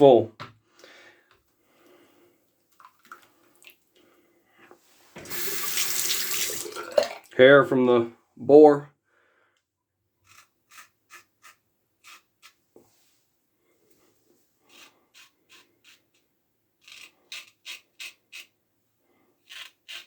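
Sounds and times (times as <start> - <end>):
razor scraping stubble: 10.2 - 12.6.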